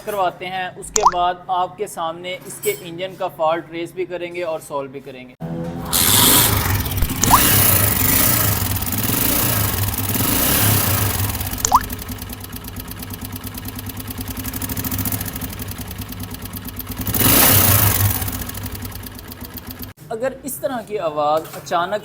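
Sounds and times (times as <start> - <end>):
short rising squeak: 5.8 - 8.0
motorcycle engine ticking: 6.6 - 20.0.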